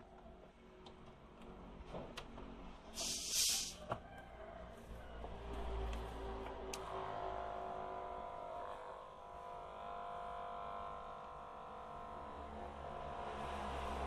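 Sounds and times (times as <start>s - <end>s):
electric hair clipper buzzing: 6.8s - 14.0s.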